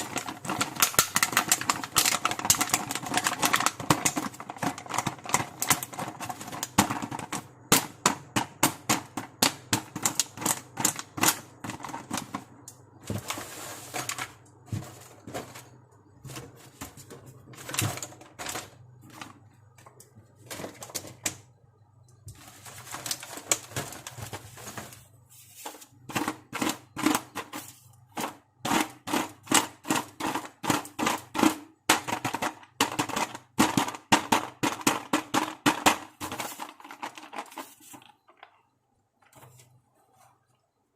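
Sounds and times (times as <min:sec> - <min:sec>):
plastic pieces clicking and tapping: 0:00.0 - 0:12.9, 0:28.2 - 0:38.6.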